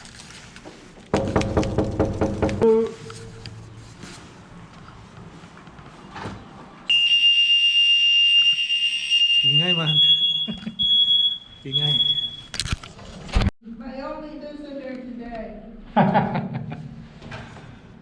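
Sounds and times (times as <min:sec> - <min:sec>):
smoke alarm high tone: 0:06.9 - 0:12.5.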